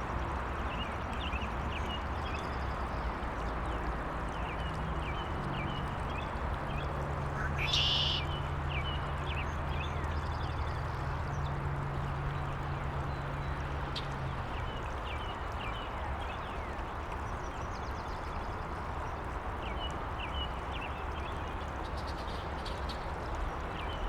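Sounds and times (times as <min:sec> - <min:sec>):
water stream rushing: 0:00.1 - 0:17.8
distant highway traffic hum: 0:02.7 - 0:15.9
birds chirping: 0:07.4 - 0:08.3
loud bird call: 0:07.4 - 0:08.3.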